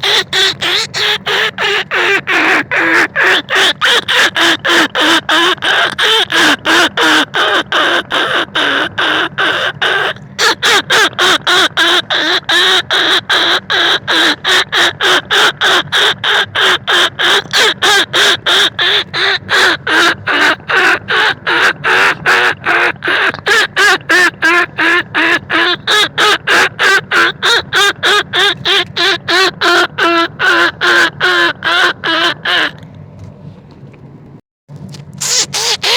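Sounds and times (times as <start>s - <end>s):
short squeaky calls: 0.0s - 6.4s, 35.2s - 35.9s.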